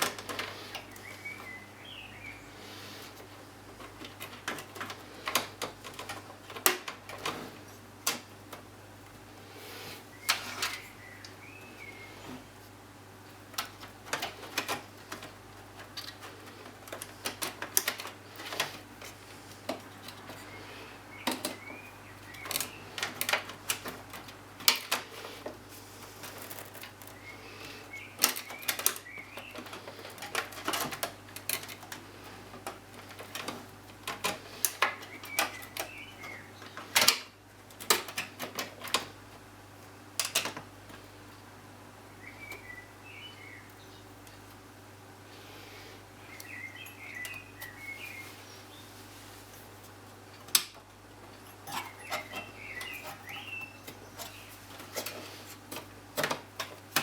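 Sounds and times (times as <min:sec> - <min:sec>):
computer parts clicking and tapping: 0:03.7 - 0:07.4, 0:21.2 - 0:25.1, 0:28.0 - 0:39.1.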